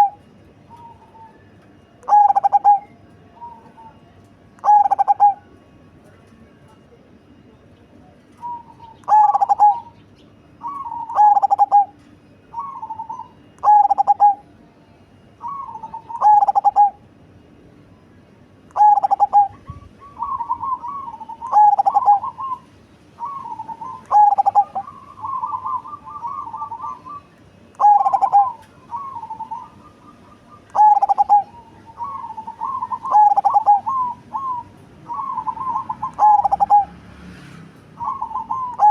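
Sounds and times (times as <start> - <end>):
dove cooing: 0.0 - 4.0, 4.6 - 5.6, 8.3 - 10.0, 10.6 - 14.6, 15.4 - 17.1, 18.7 - 37.0, 38.0 - 38.9.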